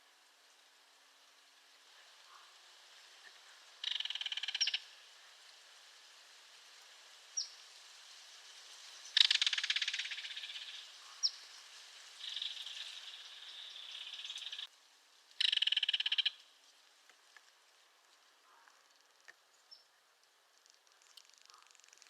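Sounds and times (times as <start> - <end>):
kingfisher rattling call: 3.8 - 4.9, 9.2 - 11.3, 12.2 - 14.7, 15.4 - 16.4.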